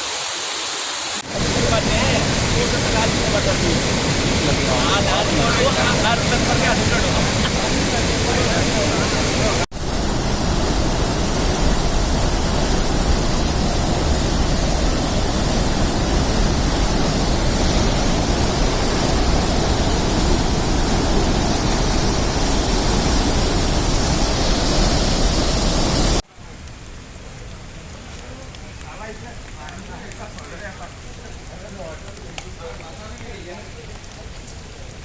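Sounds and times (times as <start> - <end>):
floodwater rushing: 0.0 - 26.2.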